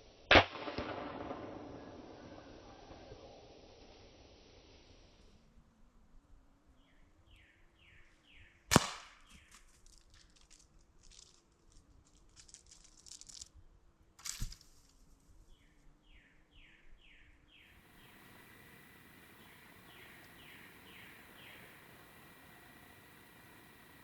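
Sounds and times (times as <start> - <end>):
air rifle crack: 0.3 - 4.6, 8.7 - 9.5, 17.8 - 24.0
ticking and rustling: 9.4 - 13.6, 14.2 - 15.2
bird calling falling notes: 17.8 - 24.0.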